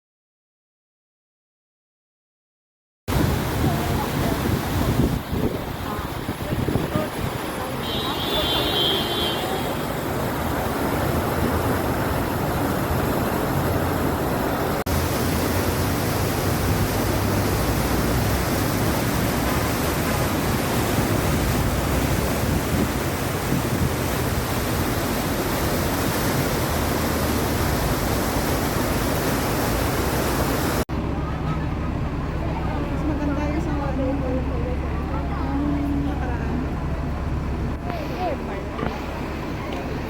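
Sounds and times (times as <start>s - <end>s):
steady rushing noise: 3.1s - 30.8s.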